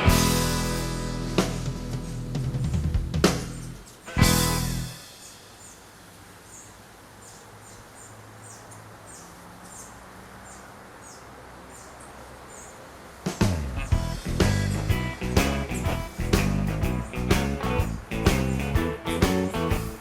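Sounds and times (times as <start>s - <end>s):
blues band music: 0.0s - 5.2s, 13.3s - 20.0s
outdoor ambience: 0.0s - 20.0s
bird chirping: 1.4s - 20.0s.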